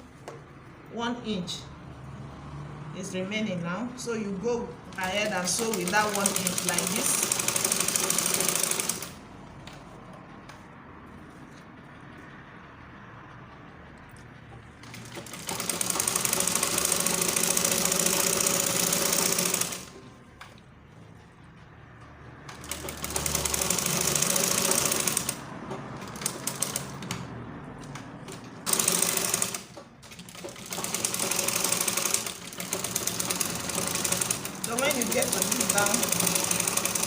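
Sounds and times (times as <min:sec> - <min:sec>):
sewing machine stitching: 0:04.9 - 0:09.2, 0:14.8 - 0:20.2, 0:22.5 - 0:27.3, 0:27.9 - 0:37.0.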